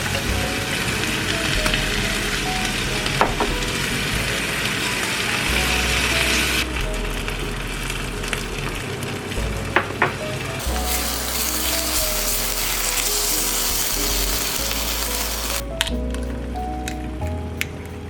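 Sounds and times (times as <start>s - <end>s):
background music: 0.0s - 18.0s
food sizzling in a pan: 10.6s - 15.6s.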